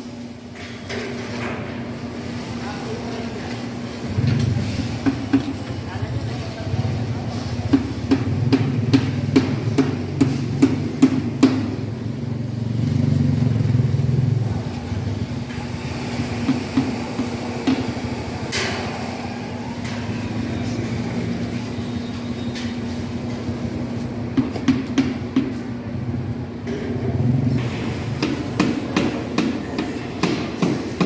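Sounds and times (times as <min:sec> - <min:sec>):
engine hum: 0:11.7 - 0:21.6.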